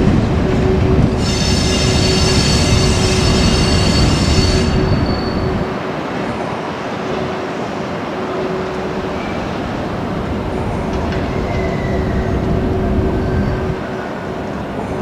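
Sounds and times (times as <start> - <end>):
train wheels rumbling on rail: 0.0 - 15.0
faint high wheel squeals: 0.2 - 5.8, 8.3 - 15.0.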